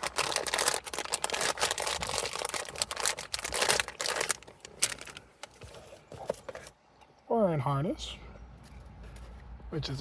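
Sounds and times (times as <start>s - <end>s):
plastic packaging crinkling: 0.0s - 6.6s.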